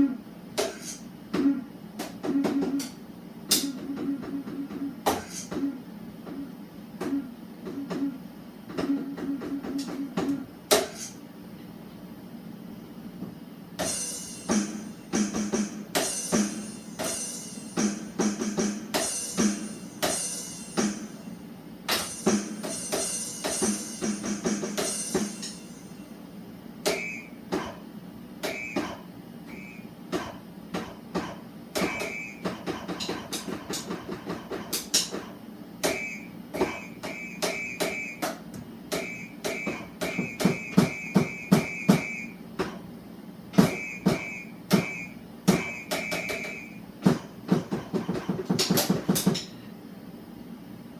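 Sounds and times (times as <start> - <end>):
drum hits: 13.8 - 21.2, 21.9 - 25.7, 38.9 - 42.2, 43.6 - 49.4.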